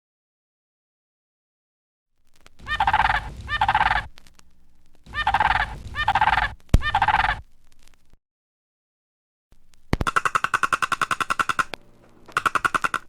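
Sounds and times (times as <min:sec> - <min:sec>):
warbling gobble-like calls: 0:02.6 - 0:04.1, 0:05.1 - 0:07.5, 0:10.0 - 0:13.0
sharp click: 0:09.7 - 0:13.0.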